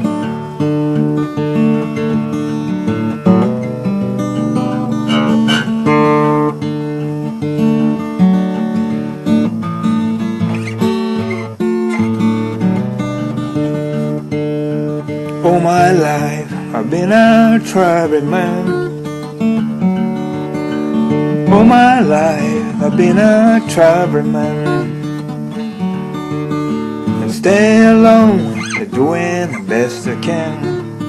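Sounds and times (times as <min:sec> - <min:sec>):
acoustic guitar blues: 0:00.0 - 0:31.0
person singing: 0:15.4 - 0:18.9, 0:21.5 - 0:24.9, 0:27.2 - 0:30.9.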